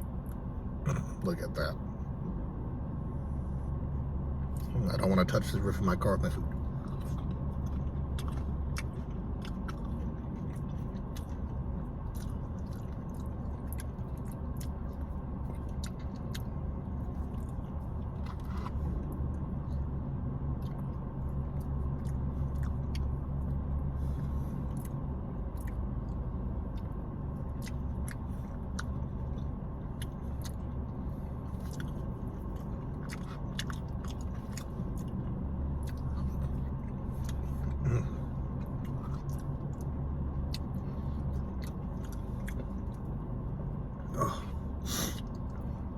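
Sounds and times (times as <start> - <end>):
steady low hum: 0.0 - 45.9
chewing and mouth clicks: 6.4 - 19.8, 20.5 - 23.7, 24.6 - 43.2, 45.1 - 45.7.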